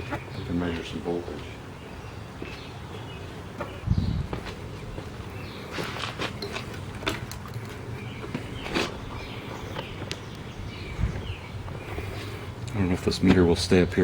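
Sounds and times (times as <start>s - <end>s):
wires being handled clicks and rustles: 4.8s - 10.5s.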